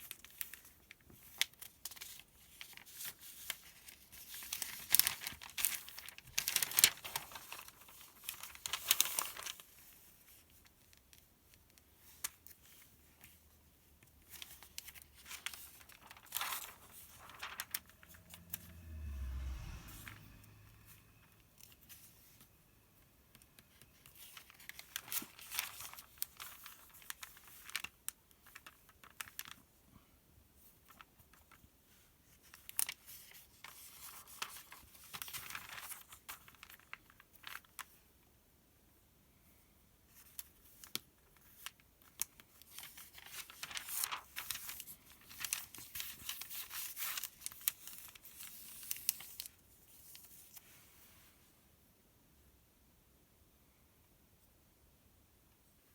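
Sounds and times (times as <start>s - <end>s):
paper pages rustling: 0.0s - 20.1s, 23.3s - 29.6s, 30.8s - 37.9s, 40.2s - 51.3s.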